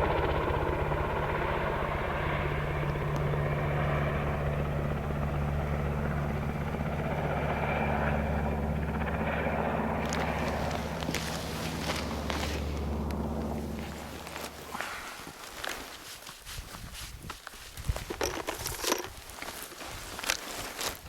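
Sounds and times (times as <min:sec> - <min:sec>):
helicopter rotor drone: 0:00.0 - 0:15.6.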